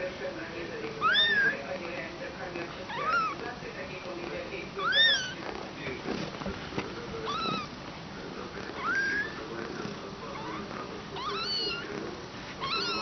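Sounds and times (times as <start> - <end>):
kittens mewing: 1.0 - 1.6, 2.9 - 3.5, 4.8 - 5.4, 7.2 - 7.8, 8.6 - 9.5, 10.3 - 13.0.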